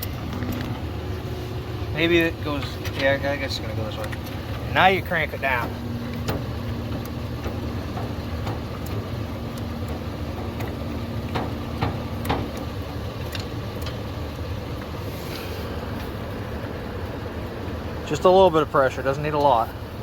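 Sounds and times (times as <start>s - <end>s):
pickup truck engine idling: 0.0s - 20.0s.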